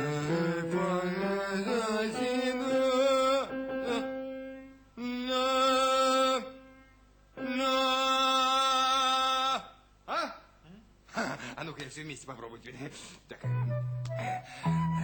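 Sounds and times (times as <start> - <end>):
person singing long held notes: 0.0 - 6.8, 14.1 - 15.0.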